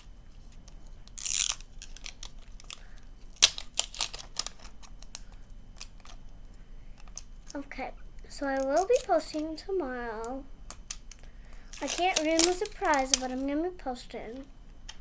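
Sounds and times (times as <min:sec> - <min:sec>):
plastic ripping: 0:00.0 - 0:06.3, 0:08.4 - 0:09.5, 0:10.7 - 0:13.6
plastic wrapping crinkling: 0:00.0 - 0:07.7, 0:08.4 - 0:09.6, 0:10.7 - 0:15.0.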